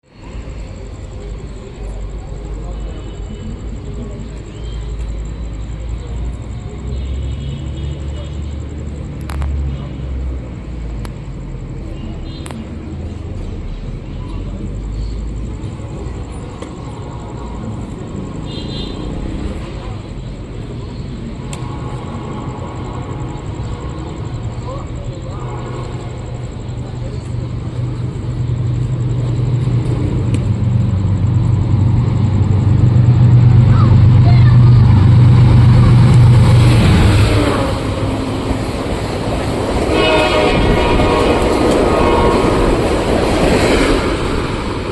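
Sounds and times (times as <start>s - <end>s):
diesel locomotive engine drone: 0.0s - 44.9s
passenger train rumbling: 0.0s - 44.9s
multi-tone train horn: 21.6s - 23.5s, 25.3s - 26.4s, 36.6s - 38.8s, 39.7s - 43.9s.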